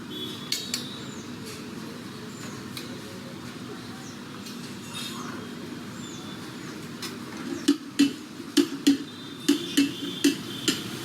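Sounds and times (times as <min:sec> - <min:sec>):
street hubbub: 0:00.0 - 0:11.0
metal spatula knocking on griddle: 0:07.7 - 0:10.9.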